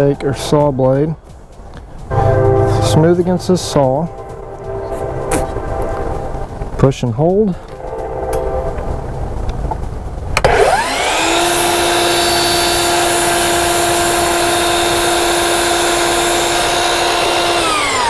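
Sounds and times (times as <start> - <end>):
miter saw motor whining: 10.4 - 18.0.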